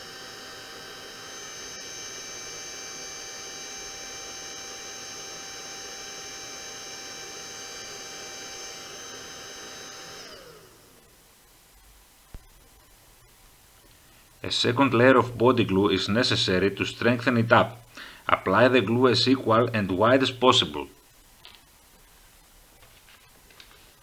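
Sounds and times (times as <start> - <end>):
hair dryer blowing: 0.0 - 11.0.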